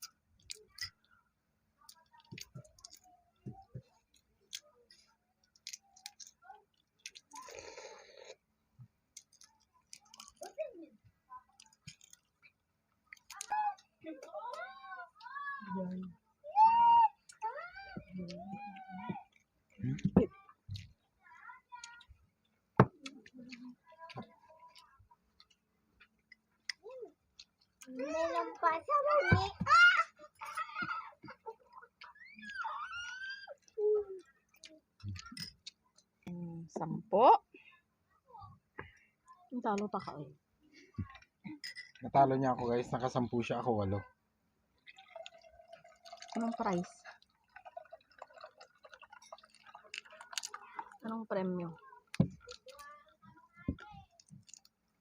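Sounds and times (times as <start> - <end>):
chewing: 1.8 - 8.5, 9.1 - 10.7, 11.4 - 14.6, 21.8 - 28.6, 31.3 - 36.2, 44.8 - 51.1, 51.8 - 55.0.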